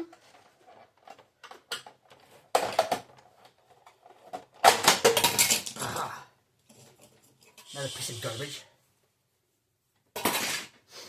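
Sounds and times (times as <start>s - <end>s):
plastic clattering: 0.0s - 5.8s, 10.1s - 10.8s
plastic parts clicking and knocking: 0.0s - 5.8s.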